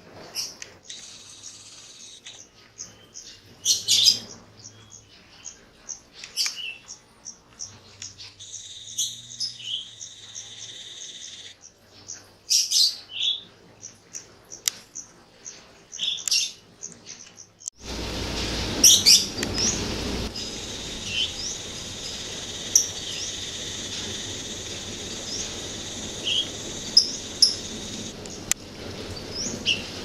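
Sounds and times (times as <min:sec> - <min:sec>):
birds chirping: 0:00.3 - 0:18.0, 0:18.6 - 0:30.0
steady high buzz: 0:17.8 - 0:30.0.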